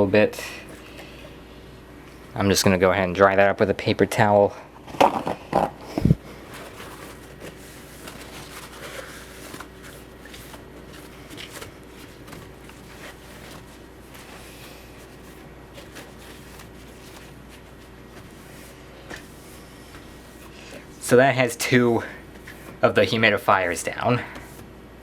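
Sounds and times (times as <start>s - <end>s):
faint steady hum: 0.0s - 25.0s
paper towel rustling: 6.0s - 24.7s.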